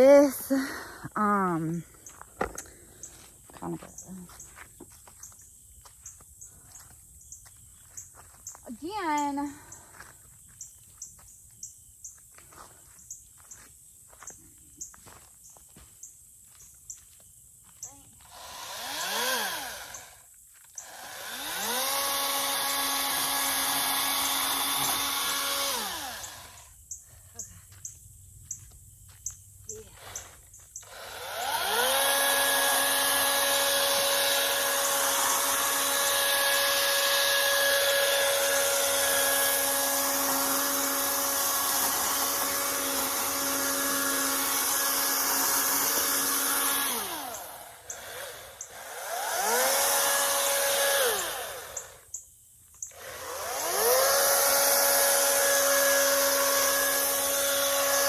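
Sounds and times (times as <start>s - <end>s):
electric chainsaw motor whining: 18.2s - 26.8s, 29.8s - 52.2s, 52.8s - 58.0s.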